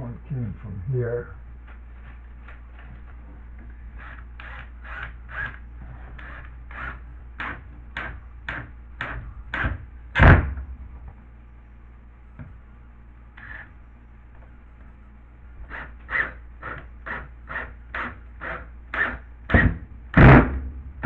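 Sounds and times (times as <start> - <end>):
heavy thump: 19.6 - 21.0.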